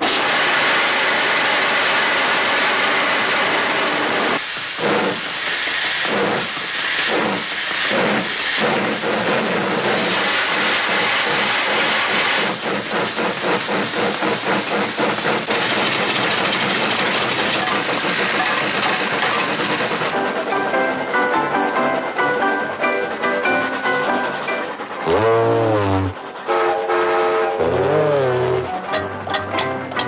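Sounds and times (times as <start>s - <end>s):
steam hissing: 0.0s - 20.4s, 22.2s - 29.0s
steam locomotive chuffing: 0.0s - 30.0s.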